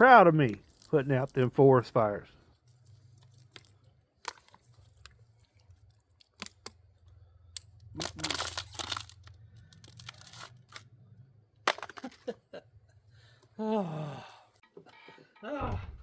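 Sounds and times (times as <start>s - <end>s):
handling and rustling: 0.4s - 1.5s, 2.3s - 7.2s, 8.0s - 11.0s.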